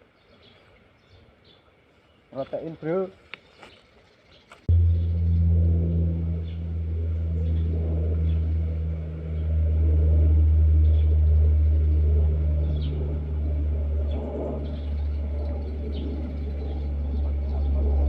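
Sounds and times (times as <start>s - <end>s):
engine humming: 4.7s - 18.0s.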